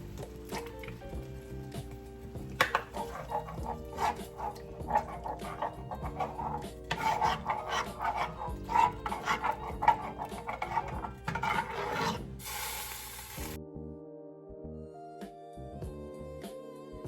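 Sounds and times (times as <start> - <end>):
background music: 0.0 - 17.0
scraping and rubbing strokes: 2.6 - 12.9
short hiss: 12.4 - 13.6.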